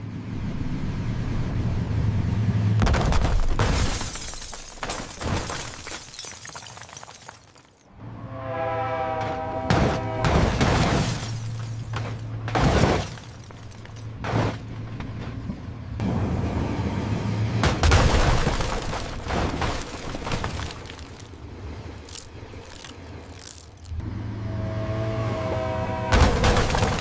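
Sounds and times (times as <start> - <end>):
car crash with breaking glass: 2.8 - 7.8, 10.3 - 13.8, 26.2 - 27.0
crunching hits: 2.8 - 7.8, 9.7 - 15.4, 17.6 - 24.0, 26.1 - 27.0.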